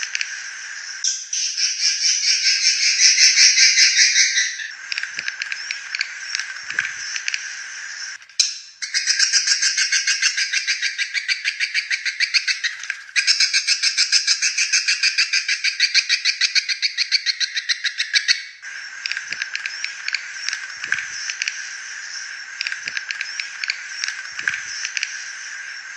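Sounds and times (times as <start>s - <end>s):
recorded bird call rattling chirps: 0.0s - 25.9s.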